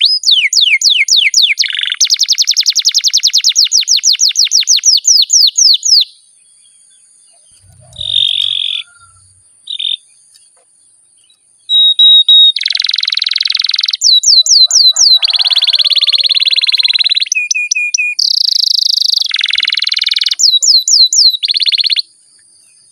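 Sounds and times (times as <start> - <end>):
canary singing: 7.3 - 10.5, 11.2 - 22.0.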